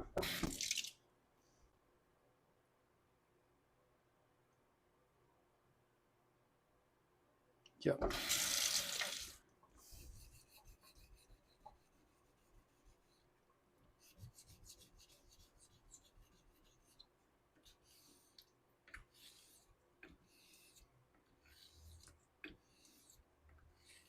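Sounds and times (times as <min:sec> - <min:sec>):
razor scraping on whetstone: 0:19.0 - 0:23.2.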